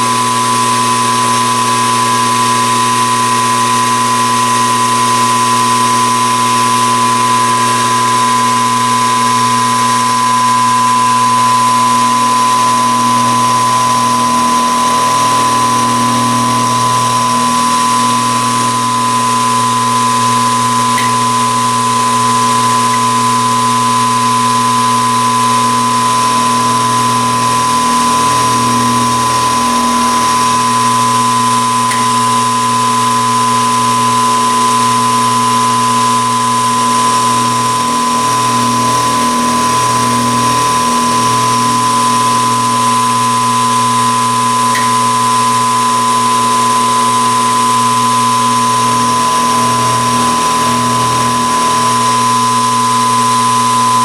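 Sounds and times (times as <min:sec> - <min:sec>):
machine tool motor hum and whine: 0:00.0 - 0:54.0.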